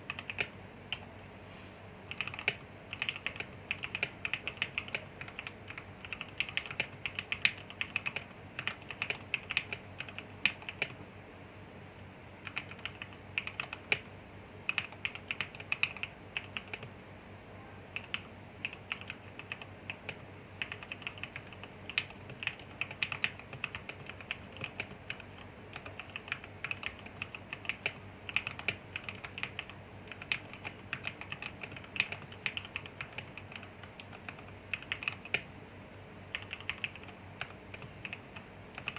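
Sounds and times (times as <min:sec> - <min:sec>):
mechanical keyboard typing: 0:00.0 - 0:01.1, 0:02.1 - 0:11.0, 0:12.4 - 0:14.1, 0:14.7 - 0:16.9, 0:17.9 - 0:35.5, 0:36.3 - 0:38.9.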